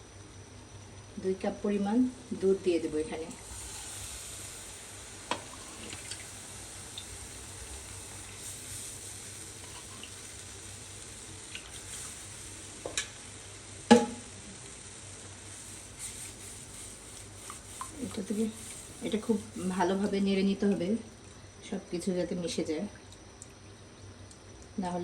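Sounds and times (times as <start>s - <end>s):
roux sizzling in a pan: 2.1s - 20.8s.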